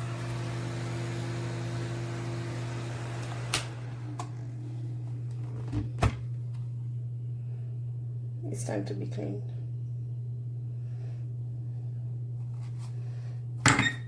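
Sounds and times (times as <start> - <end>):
space heater hum: 0.0 - 14.0
heater switch clicks: 3.2 - 4.4.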